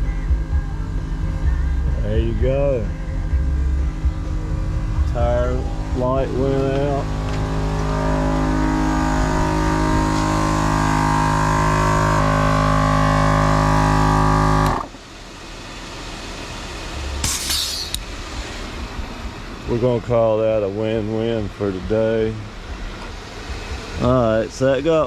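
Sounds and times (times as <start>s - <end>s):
air compressor running: 0.0s - 20.0s
air hiss: 14.8s - 19.5s.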